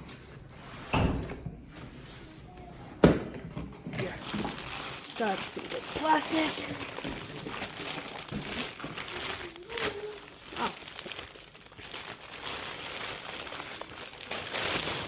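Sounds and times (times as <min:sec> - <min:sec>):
plastic packaging crinkling: 0:04.0 - 0:15.0.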